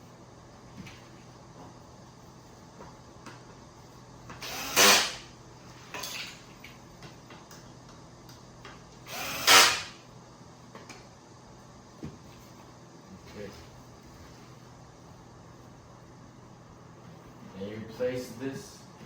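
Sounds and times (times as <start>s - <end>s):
power drill driving screws: 4.4s - 5.3s, 9.1s - 10.0s.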